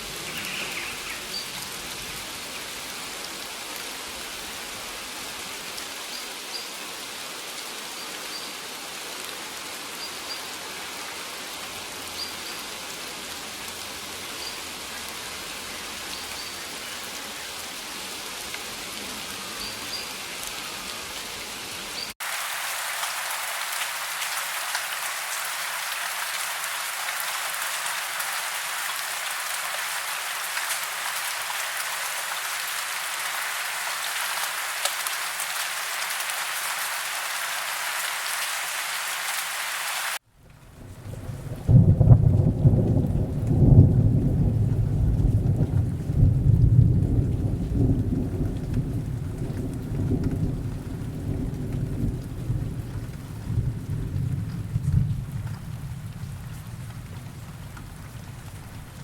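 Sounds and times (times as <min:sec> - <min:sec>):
heavy rain hissing: 0:00.0 - 0:40.2
steady rain falling: 0:00.0 - 0:59.0.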